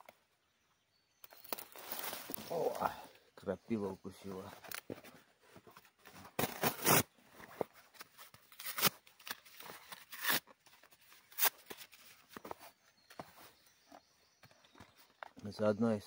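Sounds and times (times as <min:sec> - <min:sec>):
dry twigs crunching and rustling: 0:01.2 - 0:03.1.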